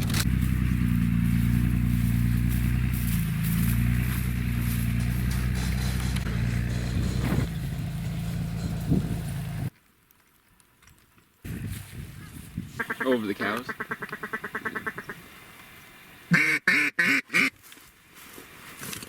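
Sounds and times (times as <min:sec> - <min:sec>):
vehicle engine humming: 0:00.0 - 0:09.7.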